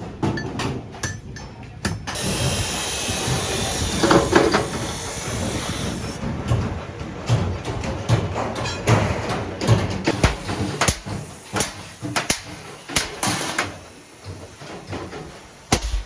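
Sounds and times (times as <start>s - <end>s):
power tool hissing: 2.2s - 6.2s, 10.1s - 15.0s, 15.6s - 16.0s.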